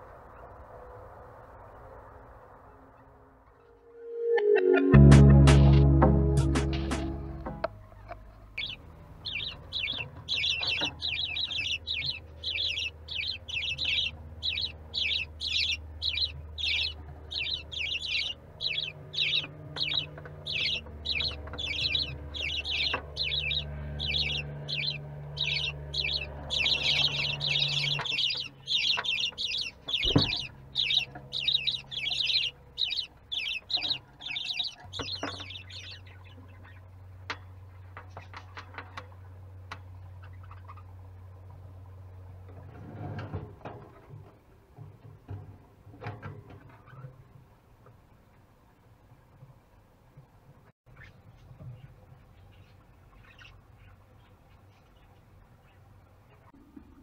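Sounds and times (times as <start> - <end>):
low hum: 0.0 - 42.6
chicks begging calls: 6.4 - 37.2.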